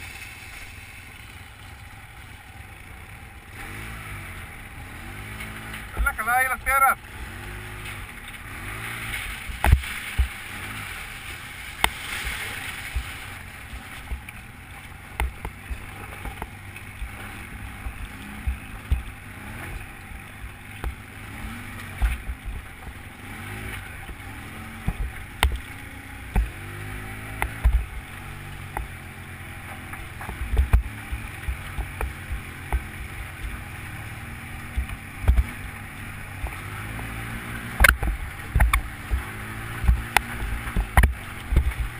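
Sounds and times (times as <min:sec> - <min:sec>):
atv engine running: 0:00.0 - 0:41.9
thumps and knocks over rough ground: 0:07.8 - 0:33.9, 0:34.6 - 0:41.9.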